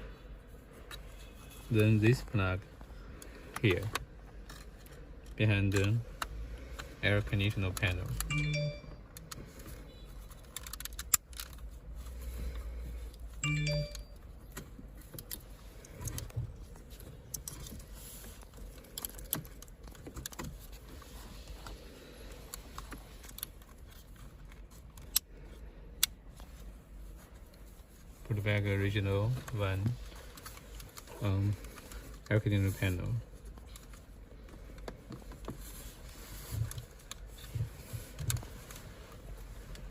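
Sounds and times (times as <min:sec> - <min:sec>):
plastic connectors clicking and rattling: 0:10.3 - 0:11.7.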